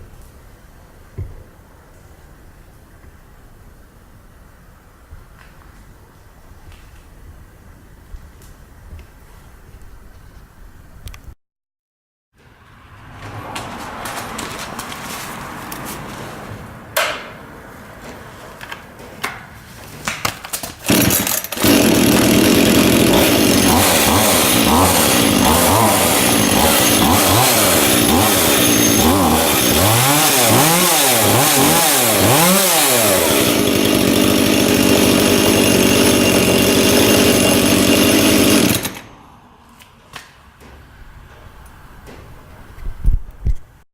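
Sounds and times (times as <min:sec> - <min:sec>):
chainsaw running: 0:20.8 - 0:39.2.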